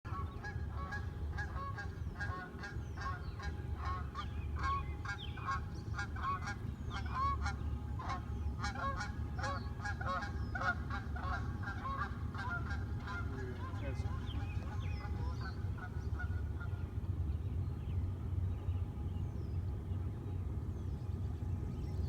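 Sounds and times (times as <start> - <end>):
geese honking: 0.1 - 17.3
steady low rumble: 0.1 - 22.0.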